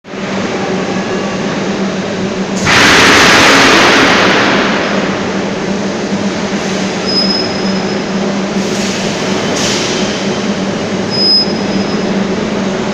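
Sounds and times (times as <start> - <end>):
machine hum and drone: 0.0 - 12.9
loud rushing noise: 0.1 - 7.2.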